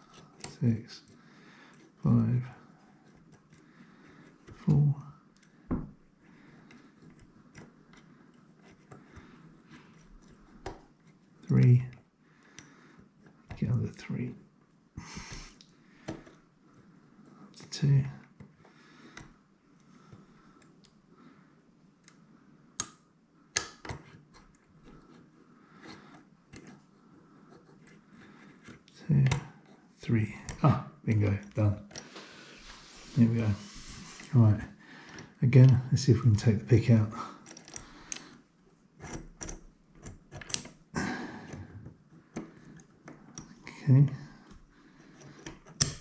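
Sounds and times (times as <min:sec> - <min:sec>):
lock pick ticking and scraping: 0:02.7 - 0:04.6, 0:05.3 - 0:13.6, 0:22.8 - 0:29.8, 0:37.4 - 0:38.4, 0:39.0 - 0:40.9, 0:41.5 - 0:43.7, 0:44.4 - 0:46.0.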